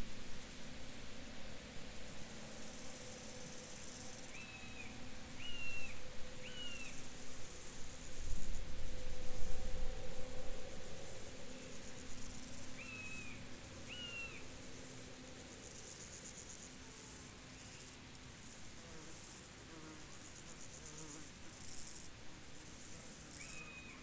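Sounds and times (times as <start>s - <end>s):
insects trilling: 2.6s - 16.8s.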